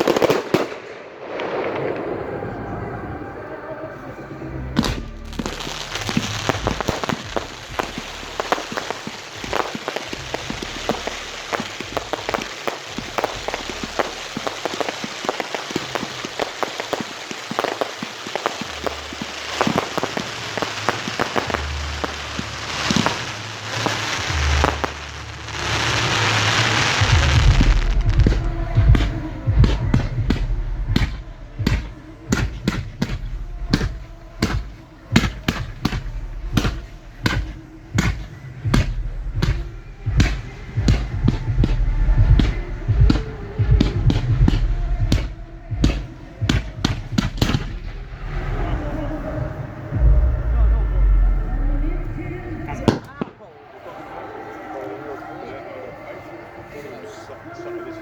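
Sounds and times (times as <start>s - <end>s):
fireworks crackling fizz: 0.0s - 53.7s
firework launch thumps and bangs: 4.8s - 48.7s.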